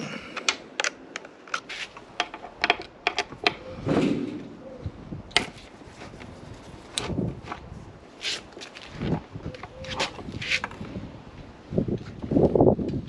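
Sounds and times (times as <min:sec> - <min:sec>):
hand tools clicking and knocking: 0:00.3 - 0:03.7
rustle: 0:01.5 - 0:13.0.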